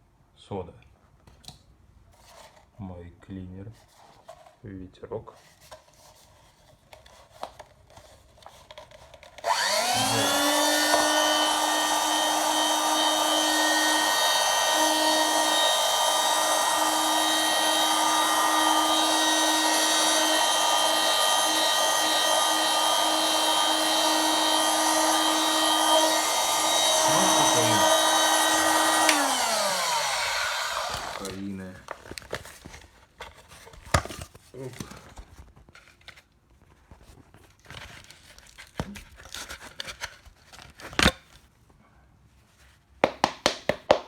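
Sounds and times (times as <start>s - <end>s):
vacuum cleaner motor whine: 9.4s - 31.4s.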